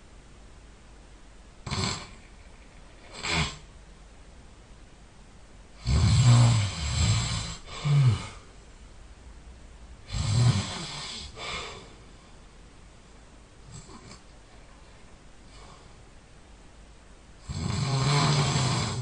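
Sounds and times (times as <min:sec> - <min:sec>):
person snoring loudly: 0:01.6 - 0:02.2, 0:03.1 - 0:03.7, 0:05.8 - 0:08.4, 0:10.1 - 0:11.8, 0:17.4 - 0:19.0.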